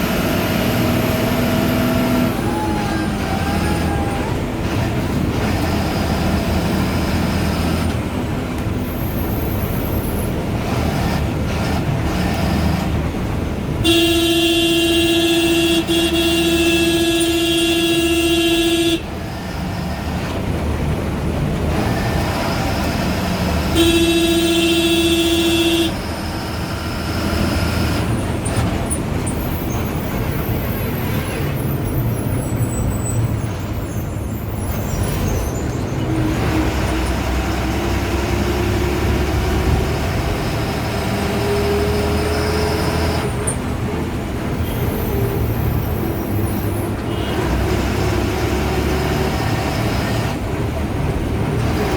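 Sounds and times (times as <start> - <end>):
bus horn: 0.0 - 7.9, 13.8 - 19.8, 21.7 - 28.6, 29.6 - 34.0, 44.5 - 50.3
bus diesel engine: 0.0 - 51.9.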